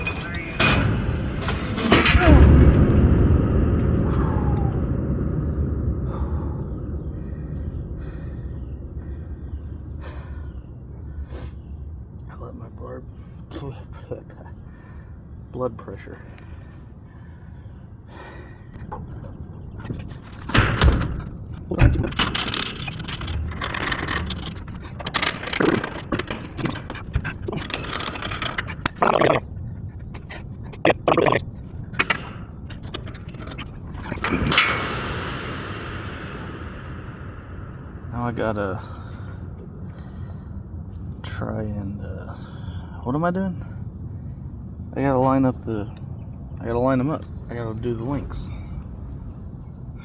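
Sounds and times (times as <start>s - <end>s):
hardware clicking and rattling: 0.0s - 3.0s, 18.8s - 39.2s
steady noisy background: 0.0s - 13.5s, 14.1s - 50.0s
wind rumble on microphone: 0.0s - 13.5s, 14.3s - 50.0s
man breathing deeply: 3.8s - 11.6s, 16.3s - 19.3s, 38.8s - 40.9s.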